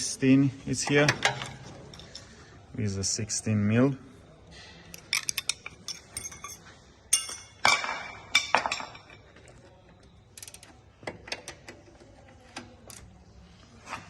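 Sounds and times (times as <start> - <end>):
metal hand tools clinking: 5.0 - 7.7.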